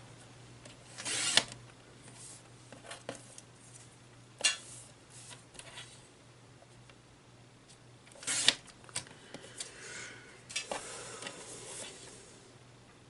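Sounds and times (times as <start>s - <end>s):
paper trimmer cutting: 1.0s - 1.5s, 8.2s - 8.6s.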